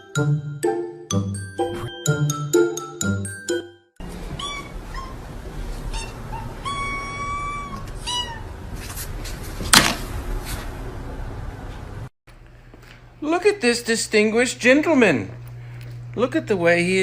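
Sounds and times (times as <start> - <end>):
cat meowing: 4.3 - 5.3, 5.9 - 8.6.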